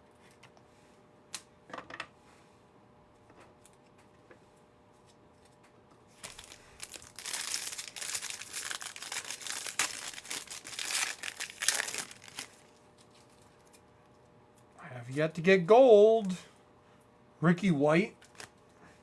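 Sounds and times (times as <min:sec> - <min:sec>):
card pack wrapper tearing and crinkling: 0:06.2 - 0:13.4, 0:18.2 - 0:18.5.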